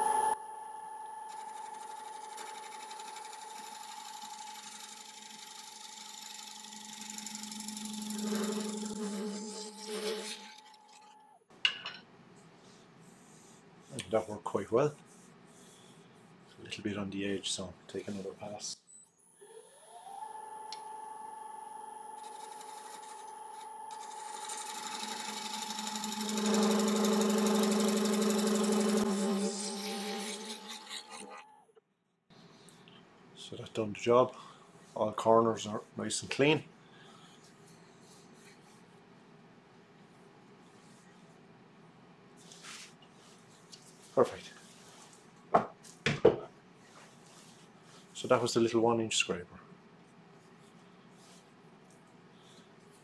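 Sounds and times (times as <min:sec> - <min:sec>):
lathe motor whine: 0:00.0 - 0:11.2, 0:19.2 - 0:31.6
tool scraping spinning wood: 0:01.3 - 0:11.2, 0:22.1 - 0:31.5.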